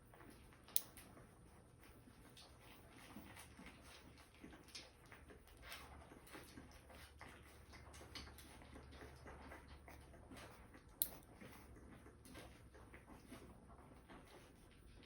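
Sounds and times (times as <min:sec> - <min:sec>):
small handling clicks: 0:00.7 - 0:01.0.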